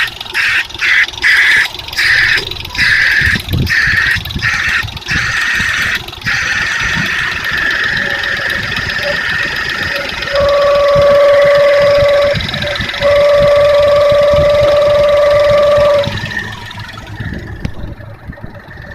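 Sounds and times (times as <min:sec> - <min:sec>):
engine running: 0:00.0 - 0:18.9
pure whistle from hose: 0:06.3 - 0:16.5.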